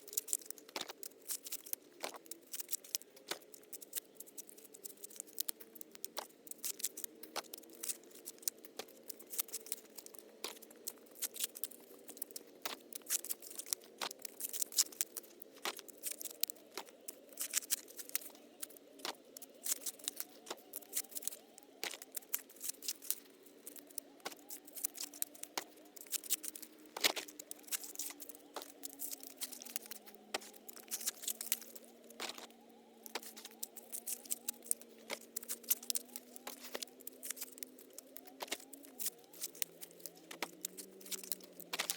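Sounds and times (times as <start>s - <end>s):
dry corn husks crackling: 0.0s - 41.9s
faint steady hum: 0.0s - 41.9s.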